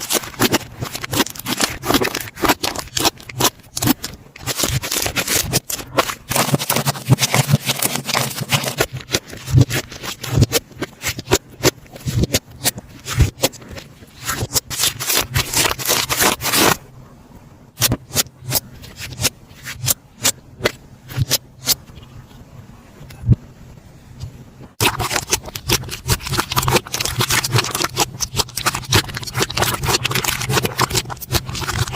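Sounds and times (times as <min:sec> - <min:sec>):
slime squished by hand: 0:00.0 - 0:16.8, 0:24.8 - 0:31.9.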